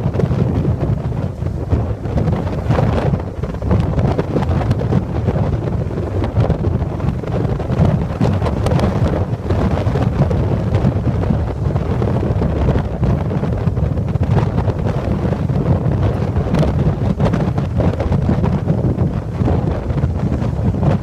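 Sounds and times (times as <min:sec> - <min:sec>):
strong gusty wind buffeting microphone: 0:00.0 - 0:21.0.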